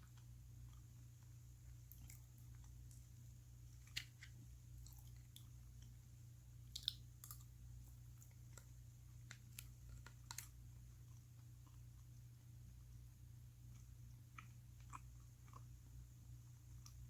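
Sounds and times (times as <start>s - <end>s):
person chewing: 1.7s - 3.1s, 3.7s - 6.0s, 6.6s - 12.3s, 13.6s - 15.9s.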